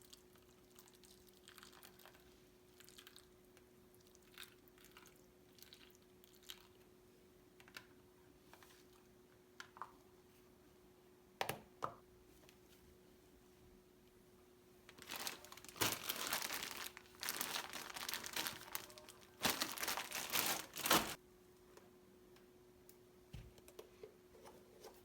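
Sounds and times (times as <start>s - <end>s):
packaging crinkling: 14.9s - 21.2s.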